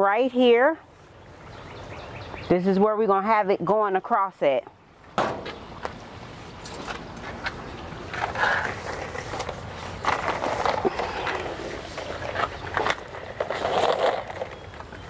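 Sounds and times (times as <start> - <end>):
plastic tubing rustling and scraping: 5.4 - 15.0.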